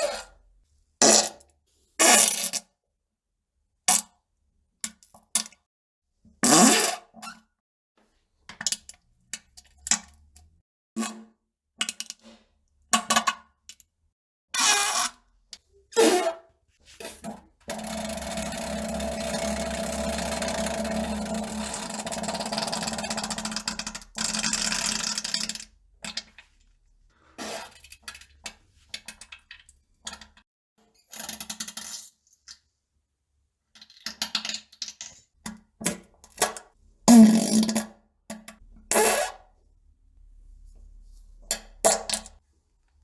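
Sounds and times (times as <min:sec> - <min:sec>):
farts: 0:37.1 - 0:37.9.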